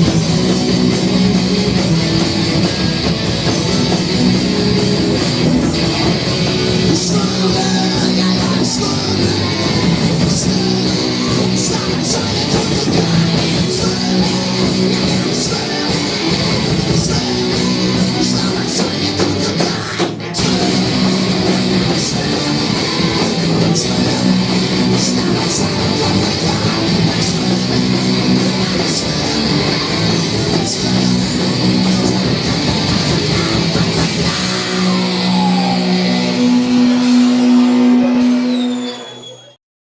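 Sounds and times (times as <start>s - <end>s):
distorted electric guitar: 0.0s - 39.2s
drums: 0.0s - 39.6s.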